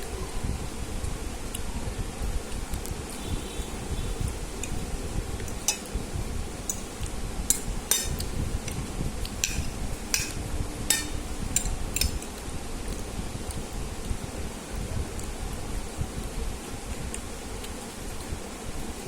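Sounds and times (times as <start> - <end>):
utensil clinking on a plate: 7.5 - 8.2, 9.4 - 12.3.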